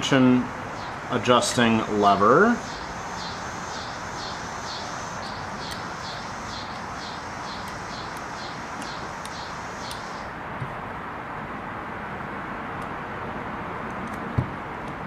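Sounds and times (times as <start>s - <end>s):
steady hiss: 0.0s - 10.4s
high regular chirping: 0.6s - 10.4s
faint sharp clicks: 7.6s - 10.2s.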